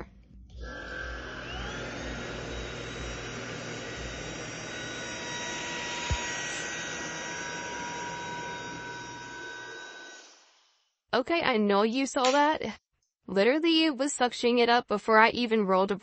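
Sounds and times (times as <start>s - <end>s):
vacuum motor high whine: 0.0s - 10.5s.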